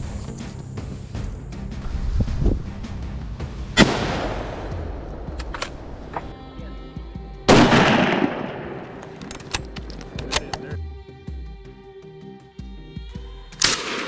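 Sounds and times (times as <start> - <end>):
background music: 0.0 - 14.0
loud echoing gunshot: 3.8 - 4.9, 7.5 - 9.1.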